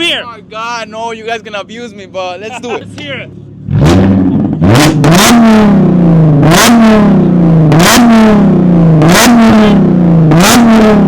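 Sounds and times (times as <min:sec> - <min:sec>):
exhaust crack: 0:02.8 - 0:11.0
car engine revving in short blips: 0:03.6 - 0:11.0.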